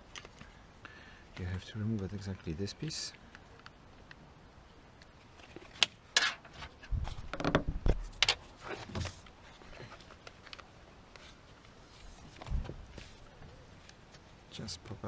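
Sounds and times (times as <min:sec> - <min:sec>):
plastic parts clicking and knocking: 0:05.5 - 0:08.4.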